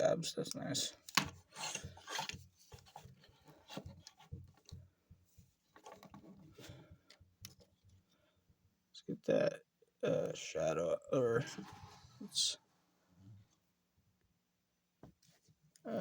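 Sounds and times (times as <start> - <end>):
plastic rubbing on plastic: 1.1 - 6.8.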